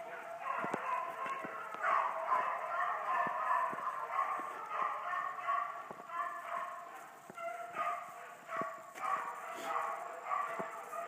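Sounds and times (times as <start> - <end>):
dogs baying and yelping: 0.0 - 11.0.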